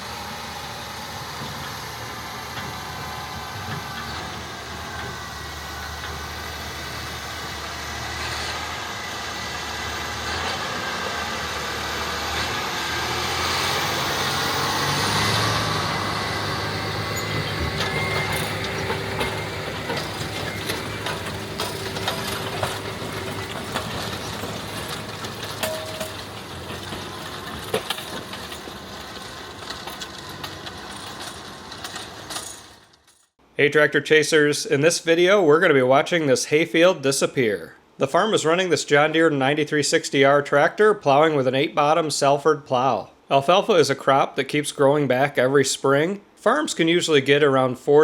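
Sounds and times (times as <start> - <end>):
tractor diesel engine under load: 0.0 - 33.6.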